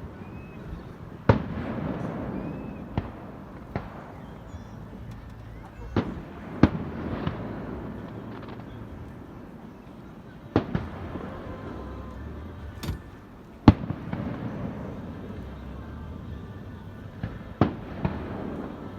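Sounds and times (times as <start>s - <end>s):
low rumble of fireworks: 0.0s - 18.9s
fireworks bangs: 1.2s - 5.1s, 5.8s - 9.1s, 12.7s - 15.3s, 17.2s - 18.8s.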